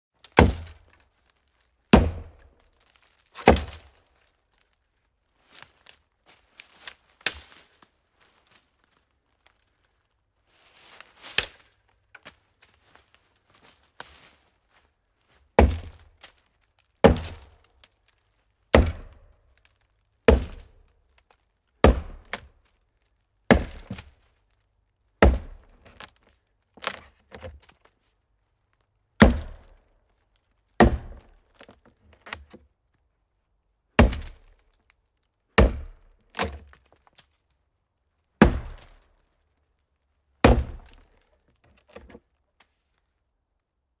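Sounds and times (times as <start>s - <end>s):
axe chopping hollow tree trunk: 0.2s - 1.0s, 1.9s - 4.0s, 6.8s - 7.6s, 11.2s - 11.6s, 15.6s - 16.4s, 17.0s - 17.6s, 18.7s - 19.3s, 20.3s - 20.8s, 21.8s - 22.5s, 23.5s - 24.2s, 25.2s - 27.7s, 29.2s - 29.8s, 30.8s - 32.6s, 34.0s - 34.6s, 35.6s - 37.0s, 38.4s - 39.0s, 40.4s - 41.2s.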